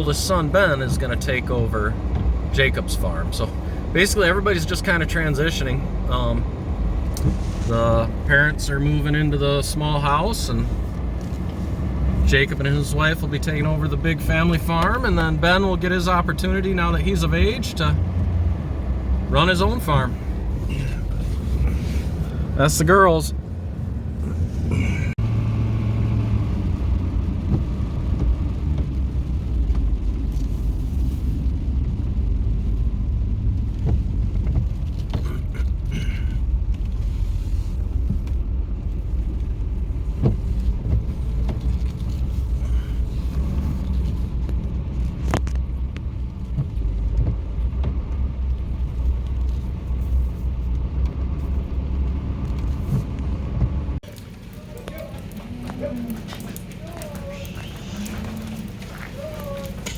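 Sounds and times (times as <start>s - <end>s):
engine and road noise rumble: 0.0s - 59.9s.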